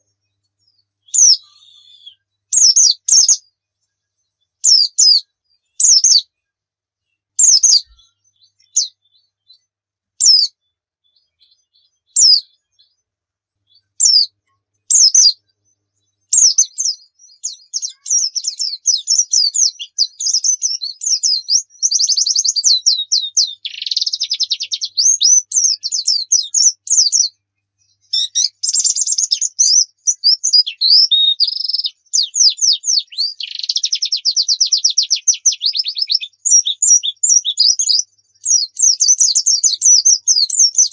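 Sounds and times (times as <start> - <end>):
bird twittering song with trills: 0.0 - 40.9
bird high call notes: 1.1 - 3.4.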